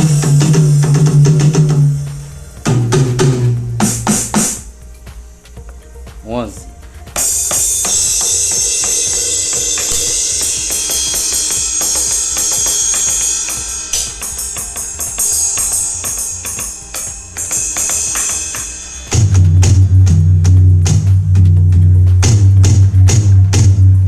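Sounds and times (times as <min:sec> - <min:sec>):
deep bass drum hits: 0:00.0 - 0:04.8, 0:19.1 - 0:24.0
cymbal crashes: 0:07.1 - 0:21.1.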